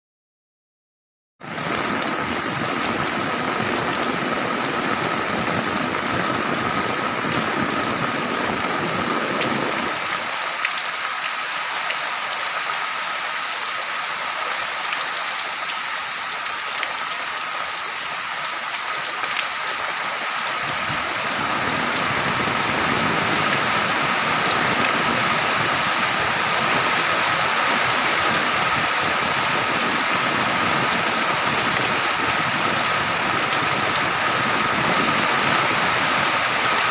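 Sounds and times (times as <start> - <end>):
heavy rain hiss: 1.5 - 36.9.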